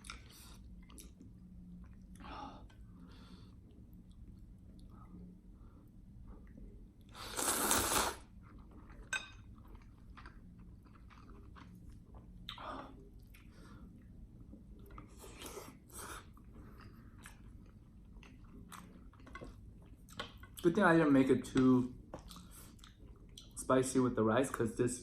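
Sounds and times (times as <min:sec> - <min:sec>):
chewing with clicks and smacks: 0:00.0 - 0:02.8, 0:03.5 - 0:05.3, 0:08.3 - 0:20.8, 0:21.4 - 0:23.6.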